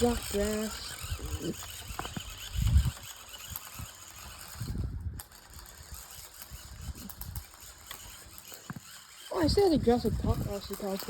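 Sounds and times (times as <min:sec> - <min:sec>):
toy car motor whirring and rattling: 0:00.0 - 0:11.0.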